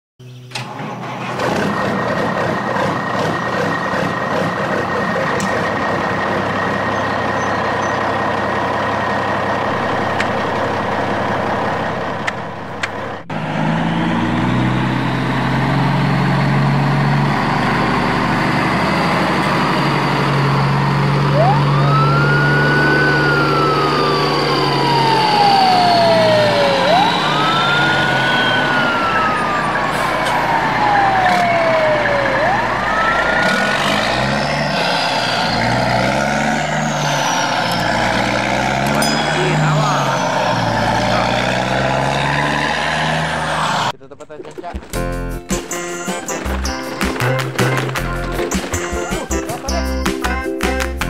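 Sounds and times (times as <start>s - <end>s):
vehicle engine running: 0.2s - 51.0s
wailing siren: 5.3s - 44.0s.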